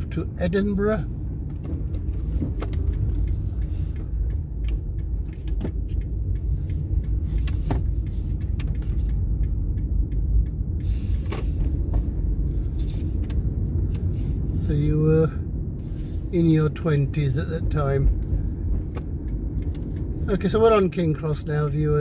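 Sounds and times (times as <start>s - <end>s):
car engine and road noise: 0.0s - 22.0s.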